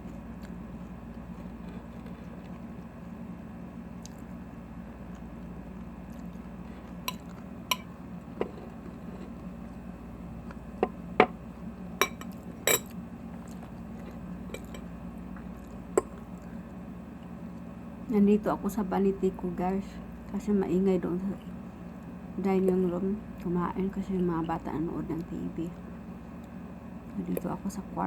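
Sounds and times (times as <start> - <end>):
steady low hum: 0.0 - 28.0
fork clinking against bowl: 7.1 - 7.9.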